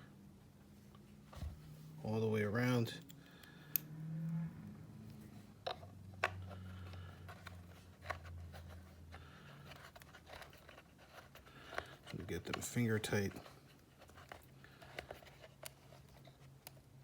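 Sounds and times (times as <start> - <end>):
low steady hum: 0.0 - 17.0
small screws clicking and tapping: 3.0 - 3.9.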